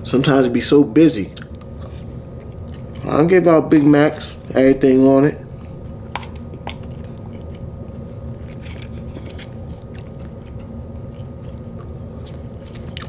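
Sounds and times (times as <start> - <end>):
steady low hum: 0.0 - 13.0
person chewing food: 1.3 - 3.2, 5.5 - 13.0.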